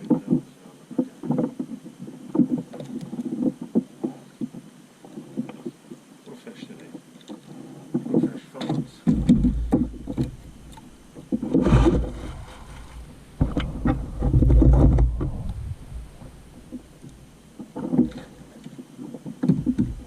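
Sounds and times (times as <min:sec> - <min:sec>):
knocks in inflatable boat: 0:07.9 - 0:10.5, 0:11.2 - 0:16.8, 0:19.0 - 0:20.0
heavy low rumble: 0:09.2 - 0:17.6.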